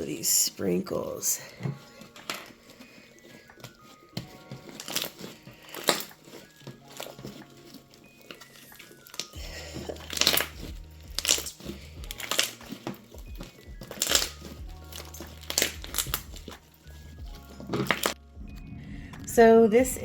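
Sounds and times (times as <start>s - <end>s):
background music with plucked notes: 0.1s - 20.0s
slime squishing: 0.6s - 18.4s
low bass note: 18.2s - 20.0s.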